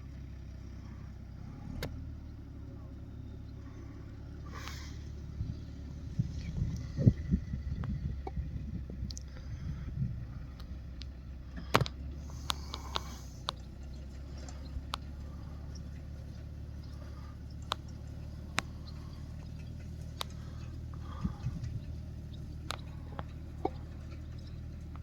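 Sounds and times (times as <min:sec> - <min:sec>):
tractor engine droning: 0:00.0 - 0:25.0
sharp clicks and rattles: 0:10.3 - 0:25.0.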